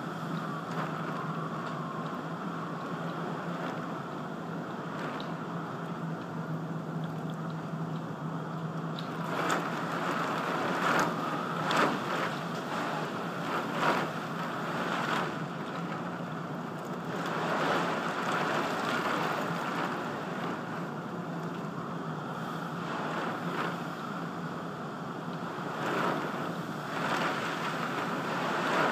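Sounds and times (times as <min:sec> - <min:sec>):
wind and rain rushing: 0:00.0 - 0:28.9.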